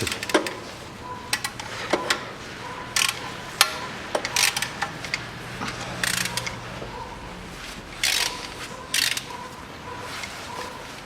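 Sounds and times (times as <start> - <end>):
metal tools clinking: 0.0 - 10.5
ratchet wrench clicking: 3.0 - 6.6, 8.0 - 9.4.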